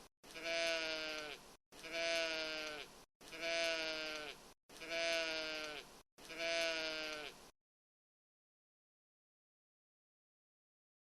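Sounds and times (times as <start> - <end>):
sheep bleating: 0.3 - 7.4.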